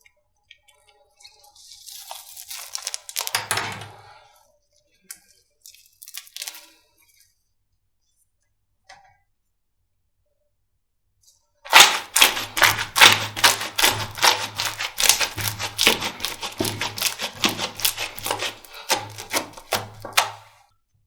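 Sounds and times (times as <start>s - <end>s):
slime clicking and popping: 11.7s - 20.4s.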